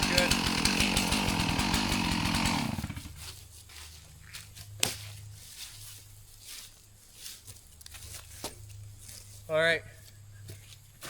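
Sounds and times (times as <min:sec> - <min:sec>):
chainsaw engine idling: 0:00.0 - 0:03.4
footsteps in leaves: 0:02.6 - 0:11.0.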